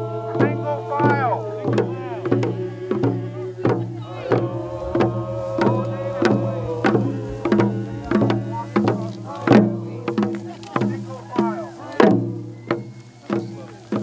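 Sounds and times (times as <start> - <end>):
drum beaten steadily: 0.0 - 14.0
voices singing: 0.0 - 14.0
low drone: 4.1 - 9.6.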